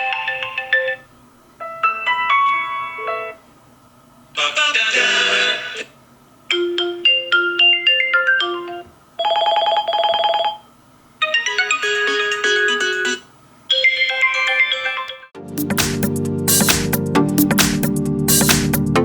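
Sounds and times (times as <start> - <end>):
electronic ringtone melodies: 0.0 - 1.1, 6.5 - 15.4.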